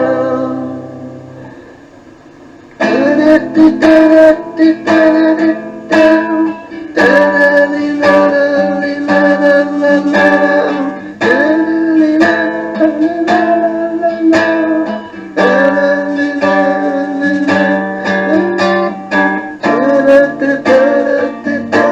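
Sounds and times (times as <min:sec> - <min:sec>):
person singing: 0:00.0 - 0:01.8, 0:02.8 - 0:21.9
strummed and plucked guitar: 0:00.0 - 0:21.9.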